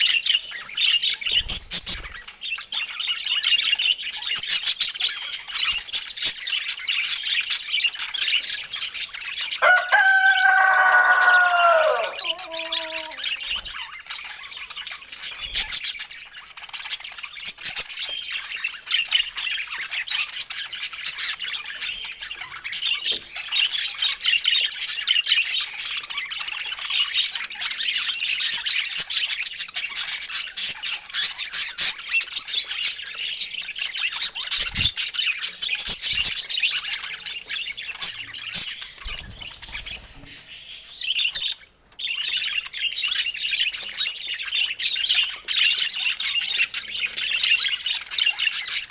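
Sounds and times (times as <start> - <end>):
budgerigar chirps and squawks: 9.6 - 13.7.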